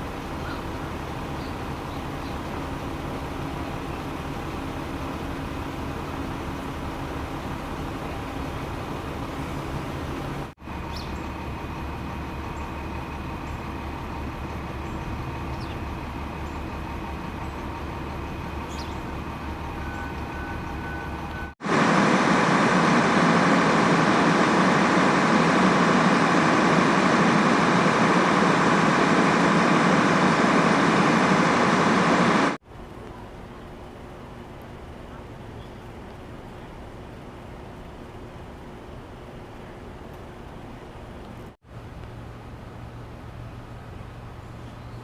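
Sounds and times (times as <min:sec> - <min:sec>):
machine humming: 0:04.2 - 0:32.6
loud machine rushing noise: 0:21.6 - 0:32.6.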